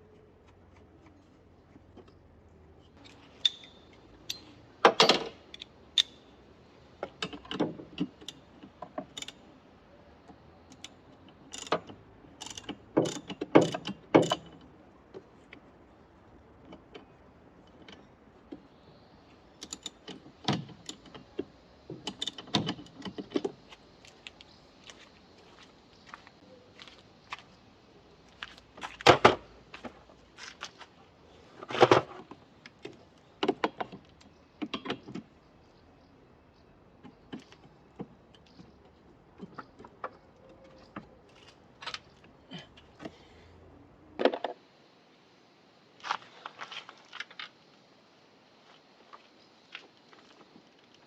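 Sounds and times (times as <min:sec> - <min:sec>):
metallic clicks of hand tools: 0:03.0 - 0:06.2, 0:07.2 - 0:09.4, 0:10.7 - 0:14.7, 0:19.6 - 0:21.2.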